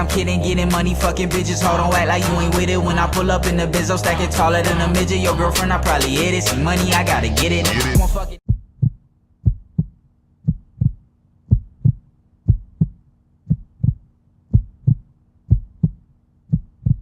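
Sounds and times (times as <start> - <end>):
heartbeat thumps: 8.0 - 17.0.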